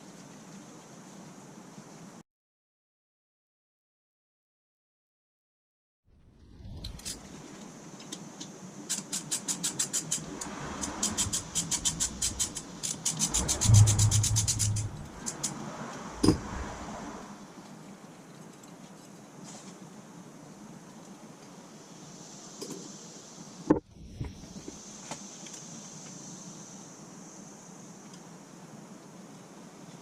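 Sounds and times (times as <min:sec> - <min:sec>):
rapid sharp mechanical clicks: 0:08.9 - 0:15.6
brief low hum: 0:13.2 - 0:15.4.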